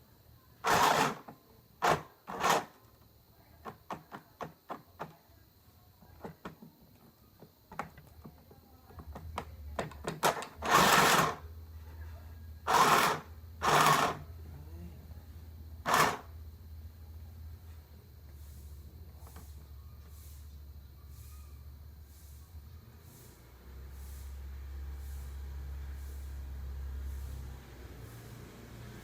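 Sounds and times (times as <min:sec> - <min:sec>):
sewing machine being handled: 0:00.6 - 0:02.8, 0:10.0 - 0:11.4, 0:15.9 - 0:16.2
small motor humming: 0:12.7 - 0:14.3, 0:15.8 - 0:16.3.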